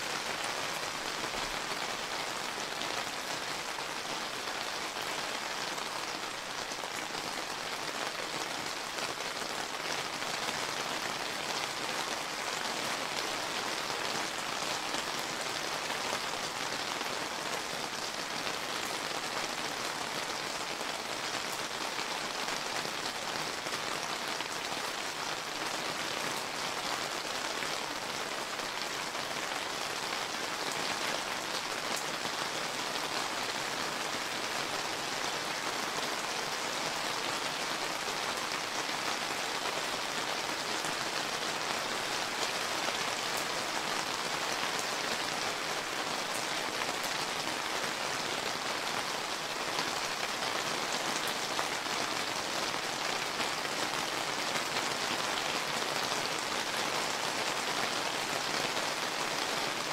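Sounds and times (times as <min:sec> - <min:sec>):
rain pattering: 0:00.0 - 0:59.9.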